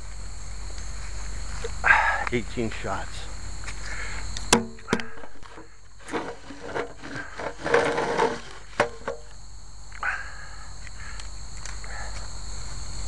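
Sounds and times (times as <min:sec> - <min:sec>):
crickets chirping: 0:00.0 - 0:13.0
rustling: 0:05.0 - 0:09.3.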